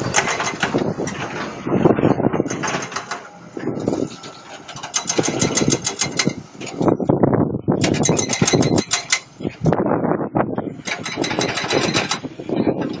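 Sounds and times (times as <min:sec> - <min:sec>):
truck diesel engine running unevenly: 0:00.0 - 0:13.0
rapid clattering clicks: 0:04.7 - 0:06.4, 0:10.8 - 0:12.3.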